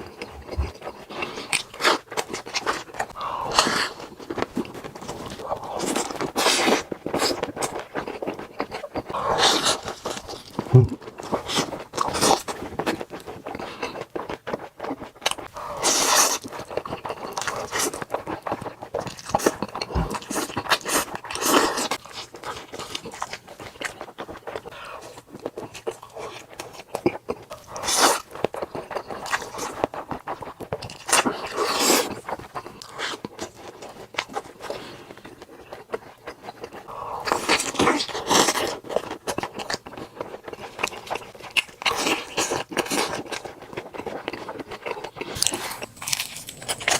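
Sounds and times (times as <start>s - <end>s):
person chewing and crunching: 0.0s - 46.9s.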